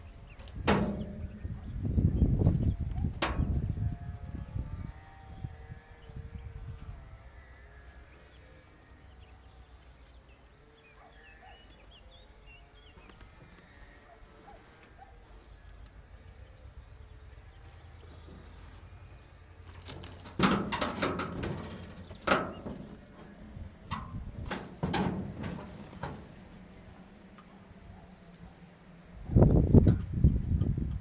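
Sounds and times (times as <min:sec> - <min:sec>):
sharp knocks and clanks: 0:00.6 - 0:01.7, 0:19.8 - 0:26.6.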